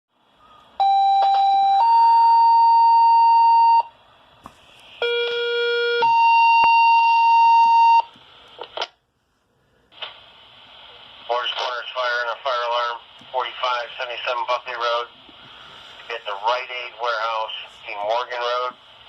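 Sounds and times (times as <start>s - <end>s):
two-tone paging tones: 0.8s - 3.9s
radio crackle: 9.9s - 19.0s.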